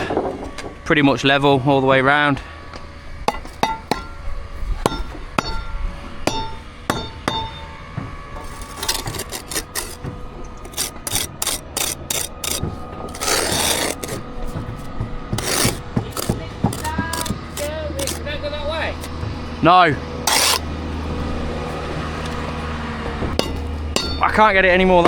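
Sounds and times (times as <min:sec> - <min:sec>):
tool scraping mortar: 0:02.7 - 0:19.6, 0:20.2 - 0:24.5
metal tool taps ringing: 0:03.3 - 0:04.2, 0:04.9 - 0:07.8, 0:23.4 - 0:24.4.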